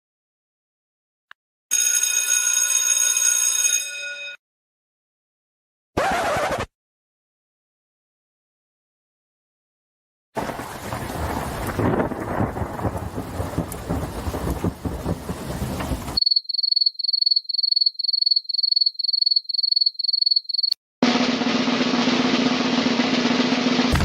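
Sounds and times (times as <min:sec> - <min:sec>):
crackling thunder: 0:10.4 - 0:16.2
rainstorm: 0:10.4 - 0:16.2.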